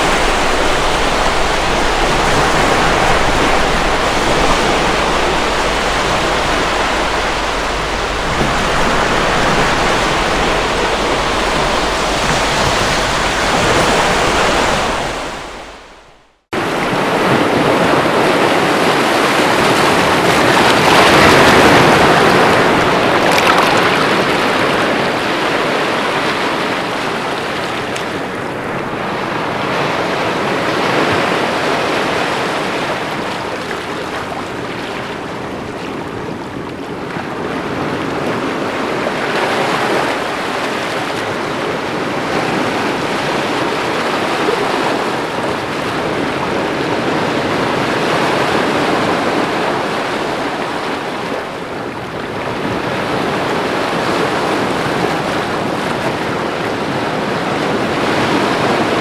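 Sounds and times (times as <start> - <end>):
waves breaking against rocks: 0.0 - 24.3.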